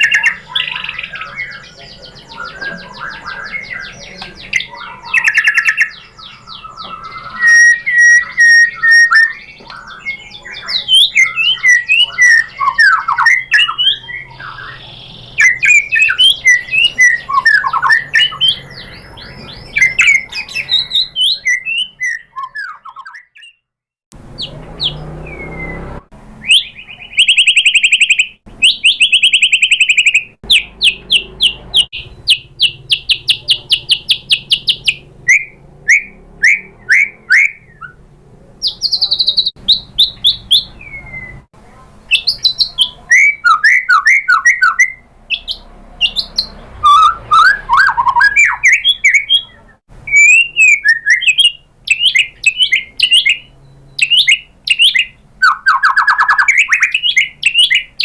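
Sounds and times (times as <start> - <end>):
songbird singing: 0.0 - 58.0.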